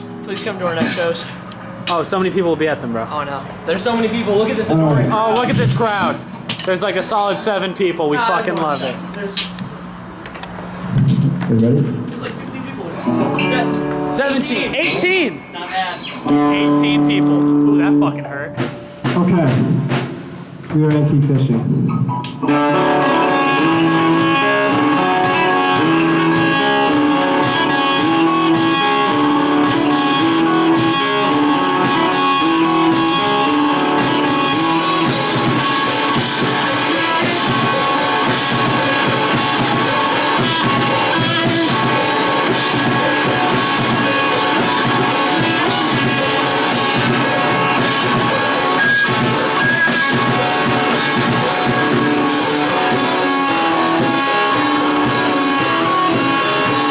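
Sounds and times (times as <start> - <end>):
live rock band playing: 0.0 - 2.8, 12.6 - 20.7, 22.0 - 56.9
guitar riff: 0.0 - 6.4, 12.3 - 20.0, 21.9 - 56.9
drum kit with cymbals: 3.6 - 7.5, 17.9 - 20.9, 22.2 - 56.9.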